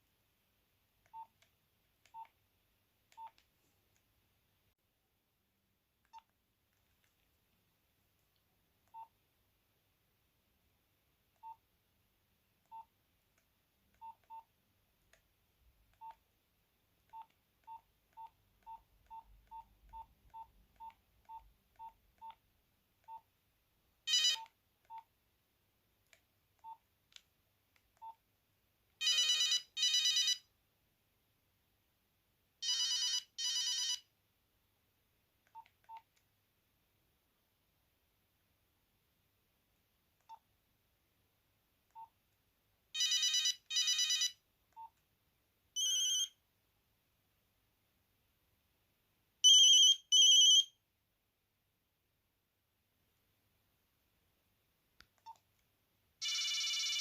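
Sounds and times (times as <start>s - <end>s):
phone keypad beeps: 45.8s - 46.3s, 49.5s - 50.7s.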